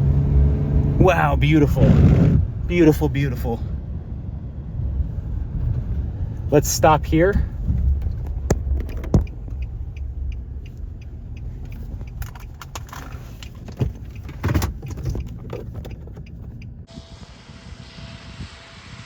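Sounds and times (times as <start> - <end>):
car rumble: 0.0 - 19.0
clicks and knocks inside car: 7.5 - 16.9.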